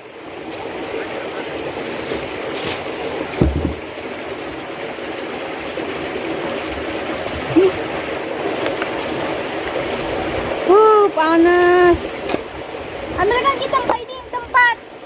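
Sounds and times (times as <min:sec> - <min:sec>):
flowing water rushing: 0:00.0 - 0:15.0
brief knock: 0:03.4 - 0:03.8.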